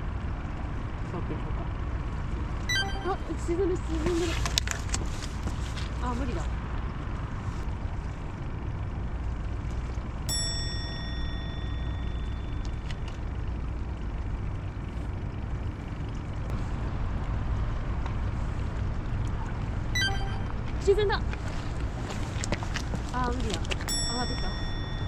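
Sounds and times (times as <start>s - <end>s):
low outdoor rumble: 0.0s - 25.0s
metallic bell ding: 2.7s - 3.3s, 10.3s - 13.0s, 20.0s - 20.6s, 23.9s - 25.0s.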